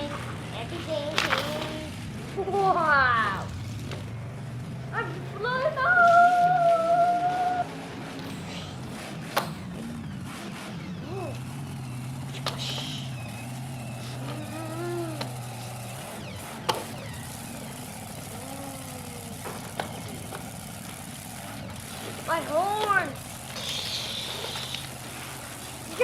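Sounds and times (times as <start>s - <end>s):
person making engine noises: 0.0s - 26.0s
plastic toy trucks colliding: 1.1s - 1.9s.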